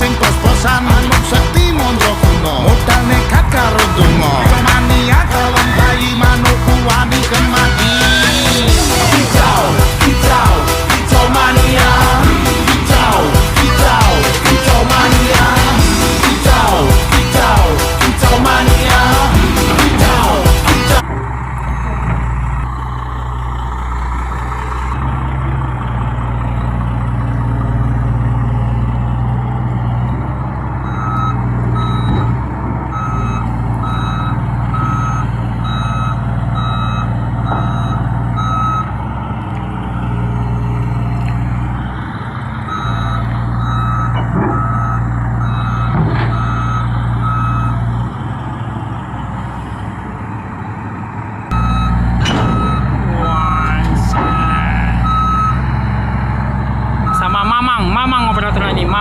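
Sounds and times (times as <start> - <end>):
heavy diesel engine running: 0.0 - 59.0
warning alarm beeping: 0.5 - 7.0, 30.8 - 32.3, 32.9 - 39.0, 42.6 - 47.8, 51.5 - 55.8, 57.0 - 59.0.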